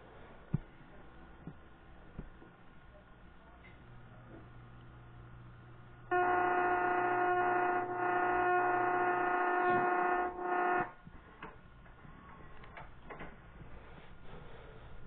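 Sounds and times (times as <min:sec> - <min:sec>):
tape static: 0:00.4 - 0:11.1
loud moaning drone: 0:06.1 - 0:11.0.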